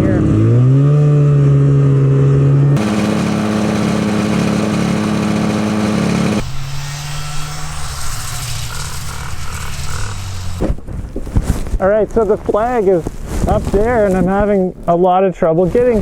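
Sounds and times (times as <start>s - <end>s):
snowmobile two-stroke engine running: 2.8s - 6.7s.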